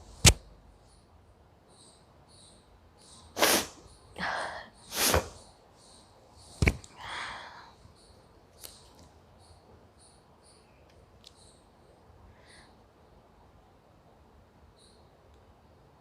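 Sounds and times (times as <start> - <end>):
crickets chirping: 0.0 - 16.0
sharp click: 0.2 - 0.4.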